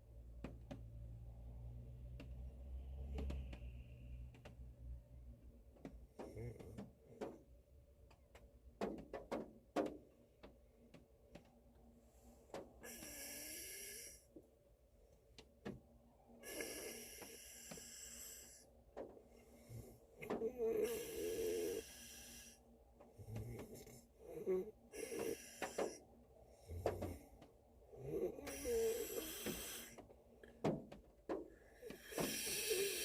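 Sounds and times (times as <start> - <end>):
man snoring: 6.2 - 6.8, 12.8 - 14.2, 16.4 - 18.6, 19.7 - 22.6, 23.2 - 26.0, 27.9 - 30.0, 31.8 - 33.0.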